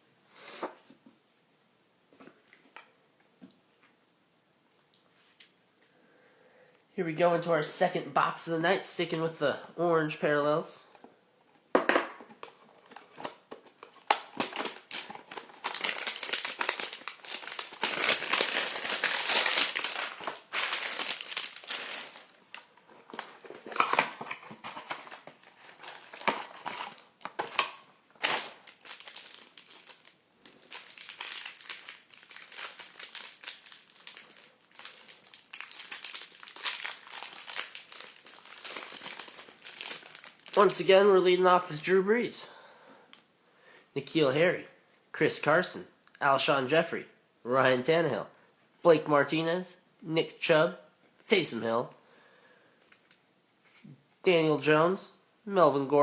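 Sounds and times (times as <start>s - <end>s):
plastic wrapping tearing and crinkling: 12.4s - 40.8s.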